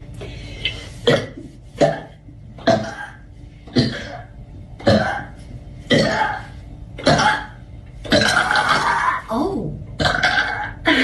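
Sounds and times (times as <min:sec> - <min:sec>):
woman burping: 0:05.9 - 0:09.4, 0:10.0 - 0:11.0.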